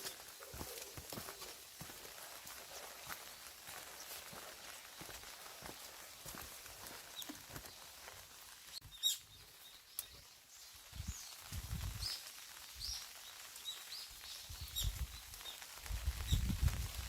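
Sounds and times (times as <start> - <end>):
footsteps on forest path: 0.0 - 10.4
small songbirds chirping: 0.0 - 17.0.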